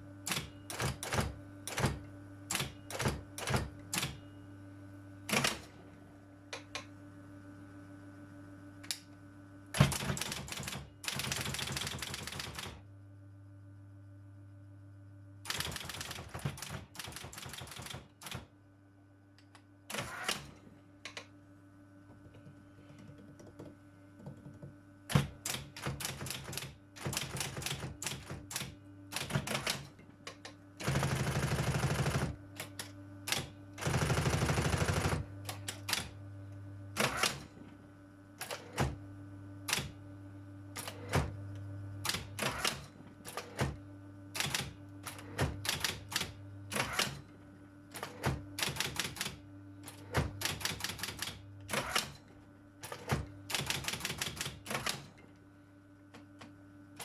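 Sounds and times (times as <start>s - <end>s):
typewriter keystrokes: 0.2s - 4.2s, 5.3s - 5.7s, 9.8s - 12.8s, 15.5s - 18.5s, 25.1s - 36.1s, 37.0s - 37.5s, 38.4s - 39.0s, 39.7s - 40.0s, 40.8s - 41.3s, 42.0s - 47.2s, 47.9s - 52.2s, 52.8s - 55.2s.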